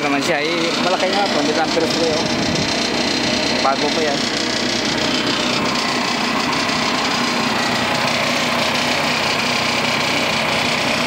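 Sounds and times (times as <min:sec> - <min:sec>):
machine engine running: 0:00.0 - 0:11.0.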